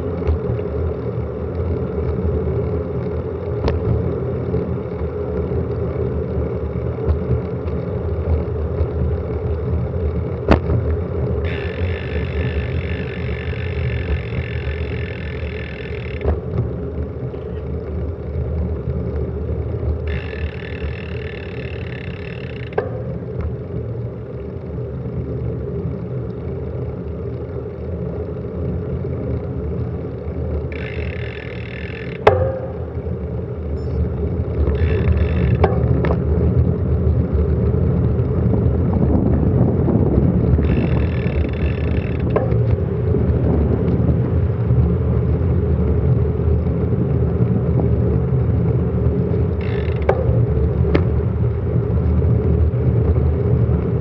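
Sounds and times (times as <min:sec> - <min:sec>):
road and tyre rumble: 0:00.0 - 0:54.0
sharp knocks: 0:32.2 - 0:33.0
wind rushing over microphone: 0:35.7 - 0:49.0.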